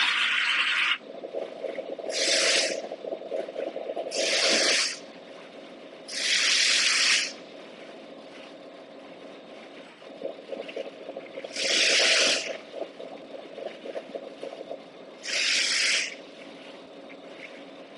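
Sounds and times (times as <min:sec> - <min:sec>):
low steady rattle: 0:01.0 - 0:17.9
air hiss bursts: 0:02.1 - 0:02.8, 0:04.1 - 0:05.0, 0:06.1 - 0:07.4, 0:11.5 - 0:12.5, 0:15.2 - 0:16.2.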